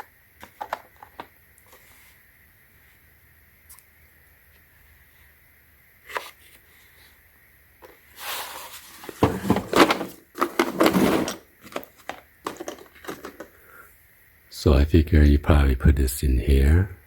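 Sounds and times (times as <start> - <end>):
metal tools rattling in plastic case: 9.0 - 13.6.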